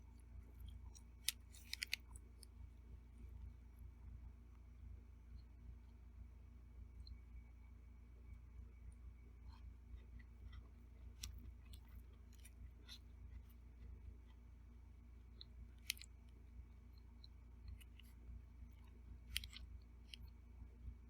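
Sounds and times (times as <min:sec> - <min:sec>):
faint chewing: 0:00.0 - 0:02.8, 0:08.9 - 0:20.5
low hum: 0:00.0 - 0:21.0.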